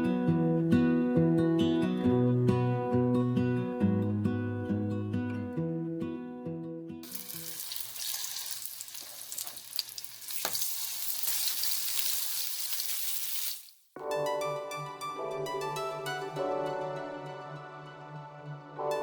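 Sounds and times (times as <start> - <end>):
guitar music: 0.0 - 7.5, 14.0 - 19.0
food sizzling in frying pan: 7.0 - 13.9
keyboard music: 14.0 - 19.0.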